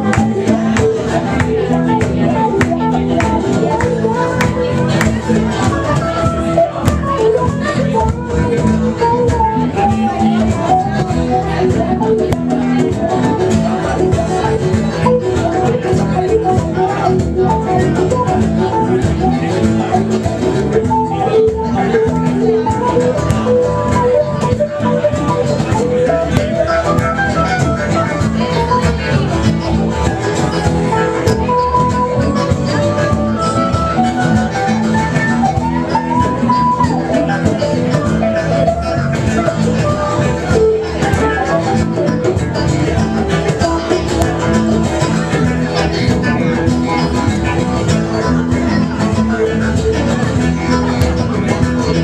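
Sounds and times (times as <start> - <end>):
bass line: 0.0 - 52.0
guitar lead: 0.0 - 52.0
live band playing: 0.0 - 52.0
regular drum beats: 0.0 - 52.0.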